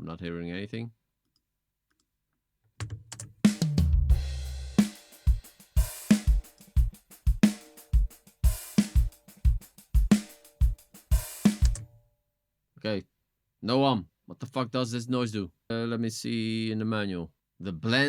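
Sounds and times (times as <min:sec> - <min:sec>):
drum kit beat with echo effect: 0:02.8 - 0:11.9
bass drum hits: 0:03.5 - 0:05.4
cymbal crashes: 0:04.1 - 0:11.7.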